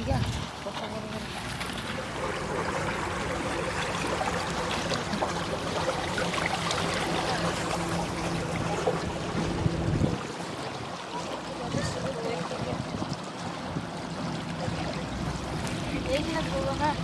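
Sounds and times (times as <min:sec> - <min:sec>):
river water trickling and splashing: 0:00.0 - 0:17.0
steady low hum: 0:01.6 - 0:12.0.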